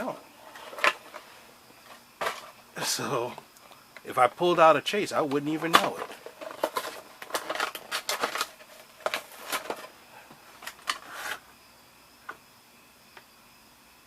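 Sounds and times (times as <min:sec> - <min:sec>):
packet crinkling: 0:05.6 - 0:09.9.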